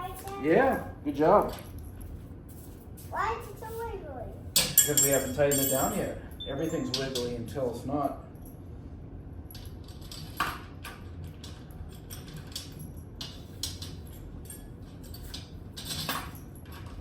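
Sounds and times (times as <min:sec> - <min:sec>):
metal hardware clinking: 0:04.6 - 0:08.6.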